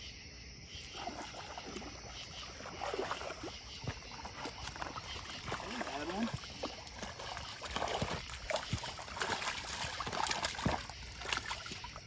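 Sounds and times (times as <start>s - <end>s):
water splashing and trickling: 0.7s - 12.0s.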